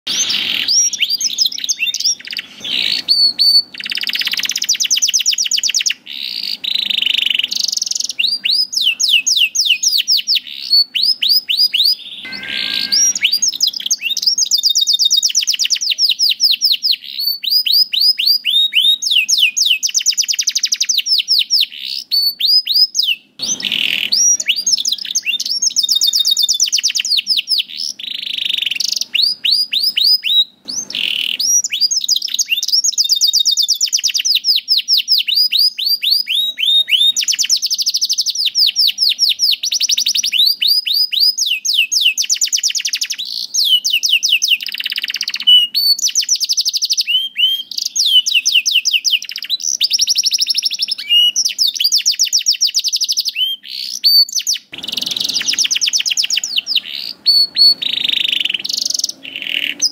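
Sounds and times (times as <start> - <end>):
canary singing: 0.0 - 59.9.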